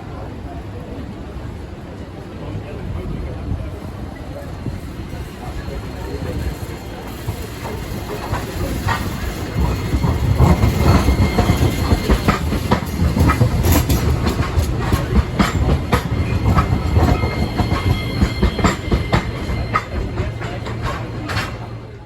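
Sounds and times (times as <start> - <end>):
train rumbling past: 0.0 - 22.0
wheels clacking over rail joints: 5.8 - 22.0.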